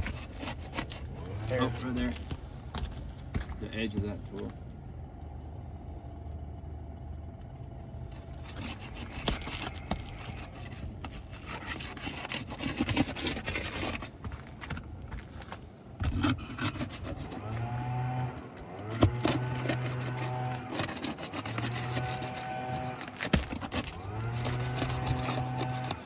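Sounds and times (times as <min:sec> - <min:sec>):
metal tool scraping shingles: 0:00.0 - 0:02.4, 0:08.1 - 0:14.2, 0:16.0 - 0:26.0
steady low hum: 0:00.0 - 0:26.0
shingle clicks and snaps: 0:16.0 - 0:22.1.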